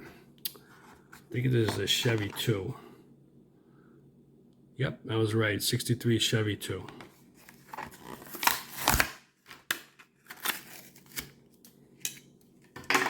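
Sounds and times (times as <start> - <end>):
plastic crinkling: 7.4 - 11.7
cardboard tearing: 7.6 - 11.4.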